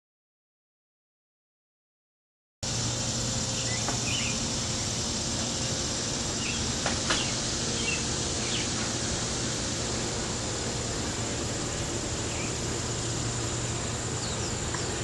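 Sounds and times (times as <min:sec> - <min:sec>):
cicada chorus drone: 0:02.6 - 0:15.0
bird chirps: 0:03.6 - 0:04.4, 0:06.4 - 0:08.8, 0:14.2 - 0:15.0.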